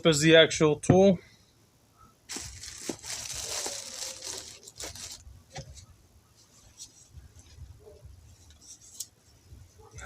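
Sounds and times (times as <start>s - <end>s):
packaging crinkling and tearing: 2.3s - 5.3s.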